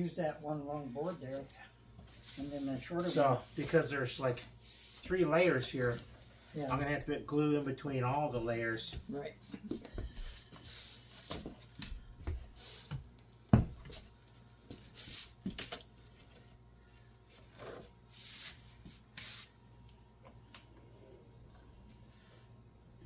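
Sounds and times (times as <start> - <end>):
short hissing sounds: 18.2 - 19.6.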